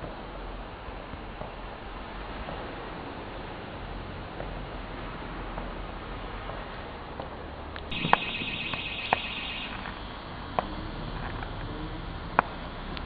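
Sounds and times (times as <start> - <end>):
high pulsing alarm tone: 7.9 - 10.0.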